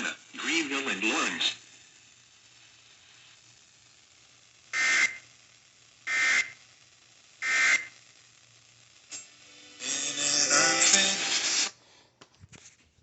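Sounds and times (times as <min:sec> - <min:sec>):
buzzy digital data tones: 0:00.0 - 0:05.4, 0:06.0 - 0:06.7, 0:07.4 - 0:08.2.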